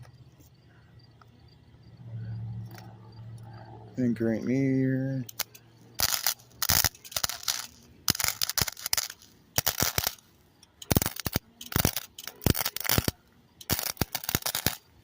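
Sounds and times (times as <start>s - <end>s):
crackling welding bursts: 5.3s - 15.0s.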